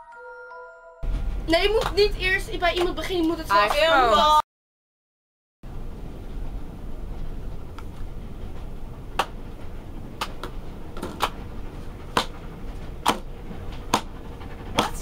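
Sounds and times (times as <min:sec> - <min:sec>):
railway carriage rumbling: 0:01.0 - 0:04.4, 0:05.7 - 0:15.0.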